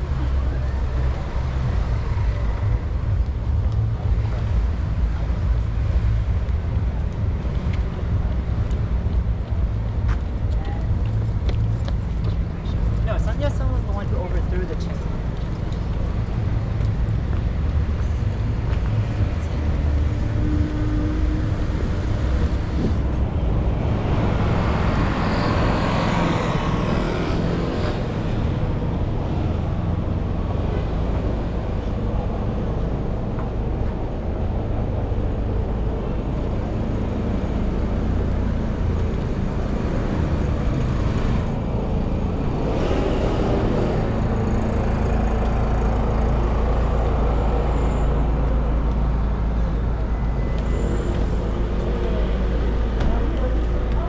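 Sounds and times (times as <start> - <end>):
rumble of traffic engines: 0.0 - 54.0
vehicle passing: 37.0 - 50.4.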